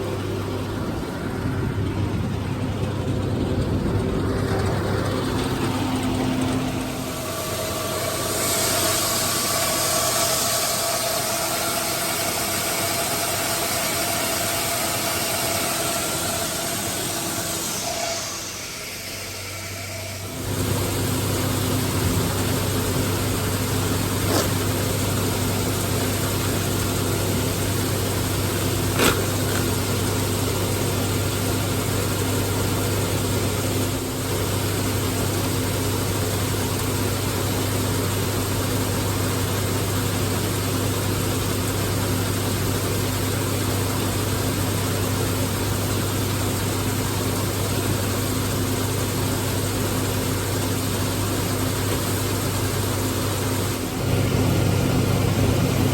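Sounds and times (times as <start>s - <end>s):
tractor engine running: 0.0s - 12.2s, 15.4s - 55.9s.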